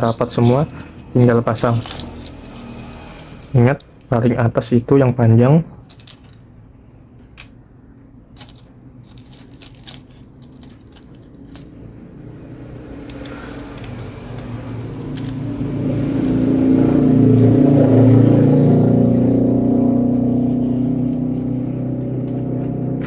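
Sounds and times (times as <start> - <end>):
small screws clicking and tapping: 0.0 - 4.1, 5.8 - 17.6
vehicle engine approaching: 0.0 - 7.0, 8.4 - 23.0.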